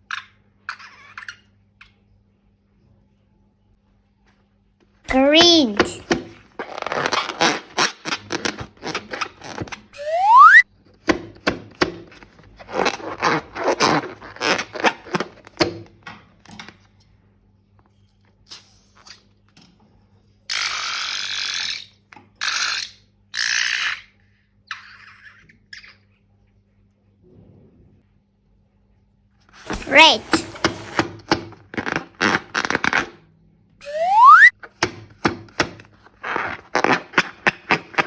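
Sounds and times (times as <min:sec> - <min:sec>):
balloon rubber squeal: 0:06.6 - 0:10.6, 0:29.6 - 0:31.0, 0:33.8 - 0:34.5
balloons crackling and squishing: 0:29.6 - 0:31.0.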